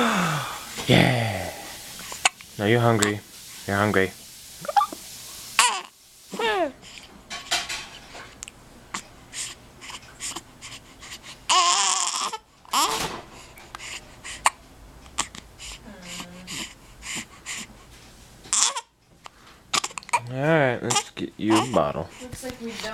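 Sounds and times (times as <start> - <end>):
baby fussy whining: 4.6 - 5.0, 11.5 - 13.1, 18.5 - 18.9
baby hiccupping: 4.6 - 5.0, 18.5 - 18.9, 19.7 - 20.3
baby crying: 5.6 - 5.9, 11.5 - 13.0, 18.5 - 18.9.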